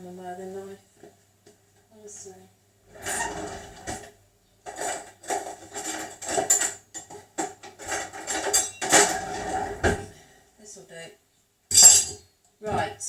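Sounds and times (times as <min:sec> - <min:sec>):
cutlery clattering: 0:04.7 - 0:09.5, 0:11.7 - 0:12.2.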